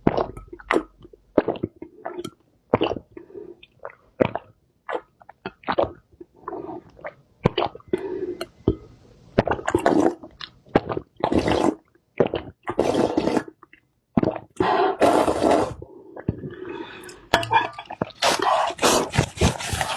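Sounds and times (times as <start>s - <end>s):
wet chewing and slurping: 9.4s - 19.9s.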